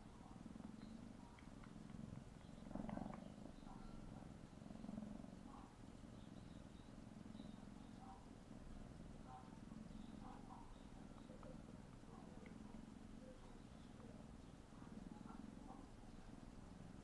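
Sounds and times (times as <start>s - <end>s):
kitten purring: 0.0s - 17.0s
soft lip-smacking clicks: 0.6s - 3.4s, 11.1s - 12.9s.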